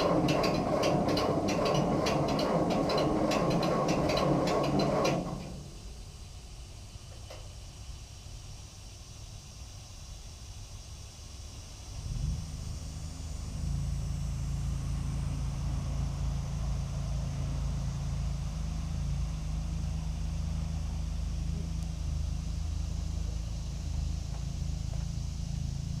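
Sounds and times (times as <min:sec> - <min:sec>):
tractor engine cranking on starter: 0:00.0 - 0:06.3.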